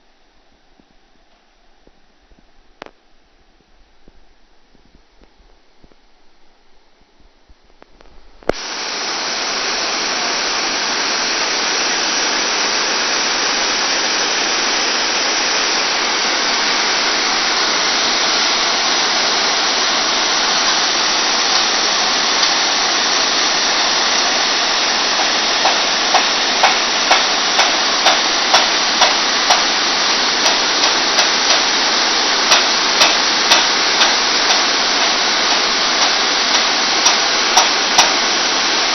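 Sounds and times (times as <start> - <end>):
floodwater rushing: 8.6 - 38.9
sharp clicks: 32.5 - 38.2.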